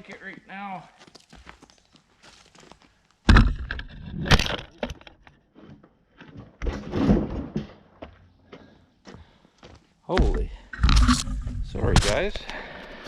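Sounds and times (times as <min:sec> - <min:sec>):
wood clattering onto a pile: 0:03.3 - 0:07.8.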